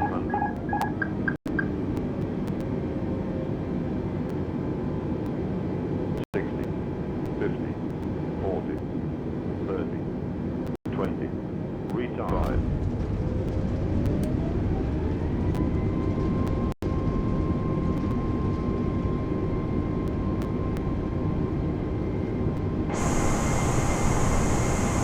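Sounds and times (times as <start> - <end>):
jet engines rumbling and whining: 0.0 - 25.0
loud hissing rush: 22.9 - 25.0.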